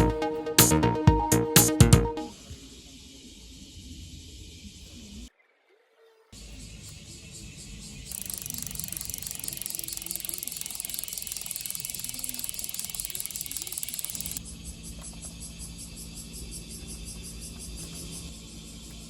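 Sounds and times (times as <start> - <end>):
bicycle freehub clicking: 8.1 - 14.4.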